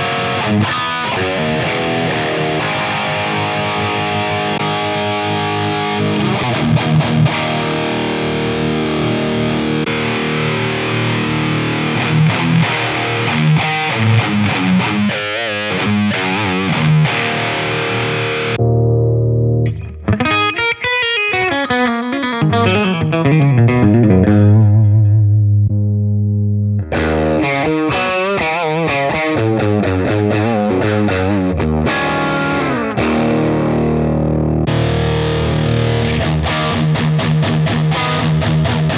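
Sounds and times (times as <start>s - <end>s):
distorted electric guitar: 0.0s - 38.9s.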